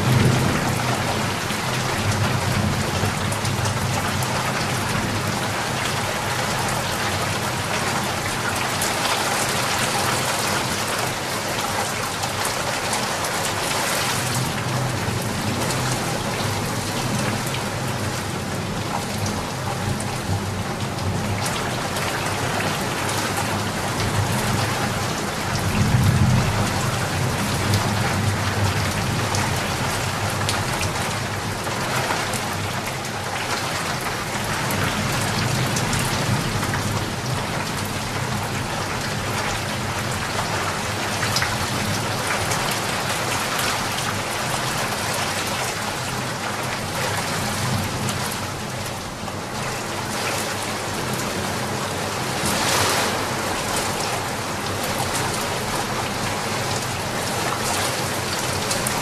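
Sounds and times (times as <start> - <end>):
low rumble of thunder: 0.0 - 5.5, 23.6 - 31.6
heavy rain falling: 0.0 - 59.0.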